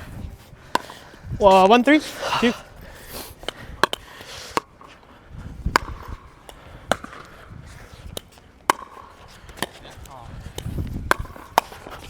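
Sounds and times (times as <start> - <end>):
paddles hitting plastic ball: 0.7 - 1.2, 3.4 - 12.0.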